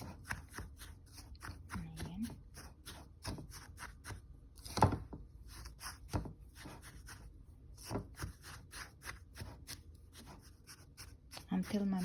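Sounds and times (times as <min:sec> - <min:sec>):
utensil scraping in a bowl: 0:05.4 - 0:12.0.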